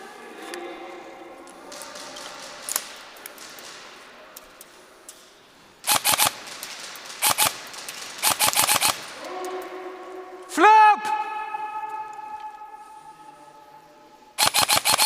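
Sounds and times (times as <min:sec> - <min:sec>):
airsoft rifle firing bursts: 0:05.8 - 0:09.2, 0:14.4 - 0:15.0.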